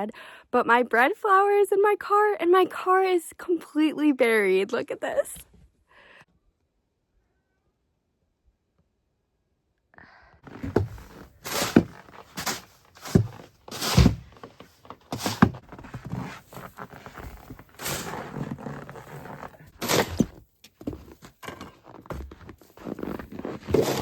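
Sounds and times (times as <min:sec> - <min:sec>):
deep snow crunching: 0:10.5 - 0:24.0.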